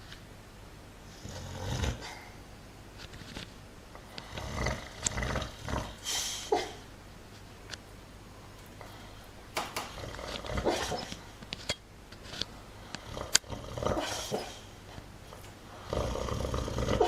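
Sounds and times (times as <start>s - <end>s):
dog snoring: 1.1s - 2.3s, 4.0s - 6.3s, 9.9s - 11.2s, 13.0s - 14.7s, 15.8s - 17.0s.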